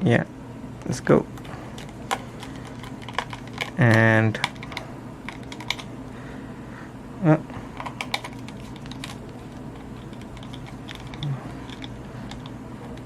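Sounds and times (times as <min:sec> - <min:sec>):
plastic parts handled: 0:01.4 - 0:05.9, 0:07.8 - 0:13.0.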